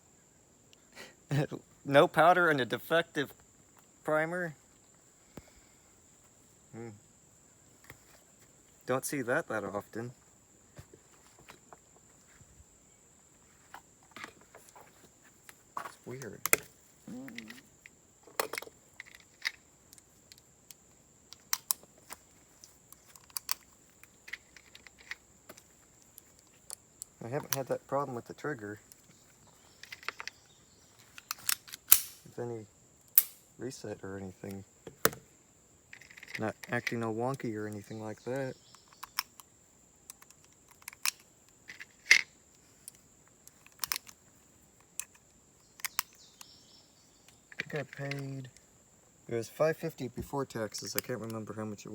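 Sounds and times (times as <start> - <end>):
pistol metallic clicks: 31.2 - 32.3, 33.1 - 33.5.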